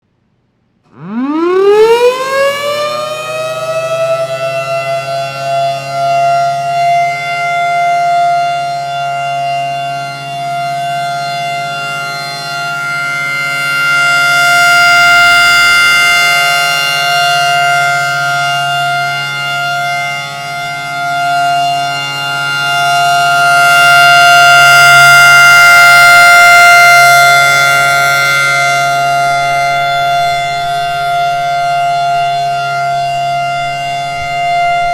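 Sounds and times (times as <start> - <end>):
warning siren wailing: 0.9 - 34.9
steady low drone: 26.3 - 34.9.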